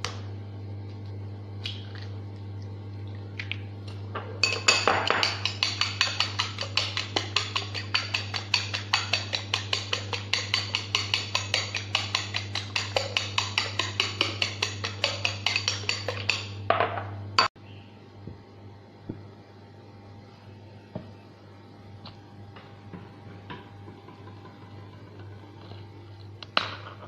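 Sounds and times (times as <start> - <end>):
fork beating eggs in a bowl: 4.4 - 16.6.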